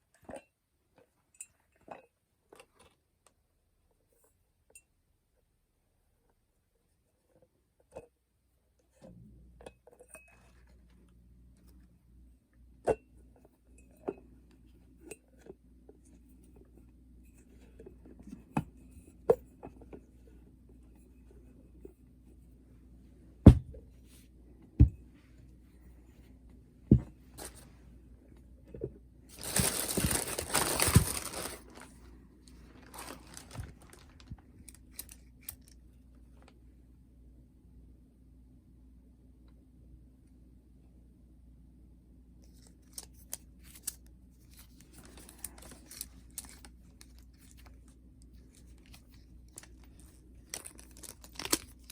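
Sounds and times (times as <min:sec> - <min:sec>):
items knocking and clicking: 0:26.9 - 0:27.6, 0:28.7 - 0:31.9
packaging crinkling and tearing: 0:29.3 - 0:35.8, 0:42.5 - 0:47.8, 0:48.5 - 0:51.9.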